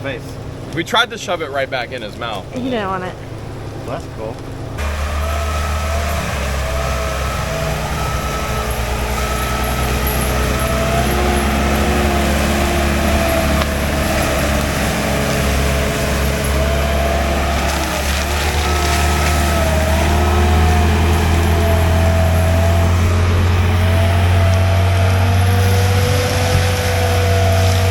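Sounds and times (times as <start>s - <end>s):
forestry mulcher engine drone: 0.0s - 27.9s
wavering whine: 2.2s - 27.9s.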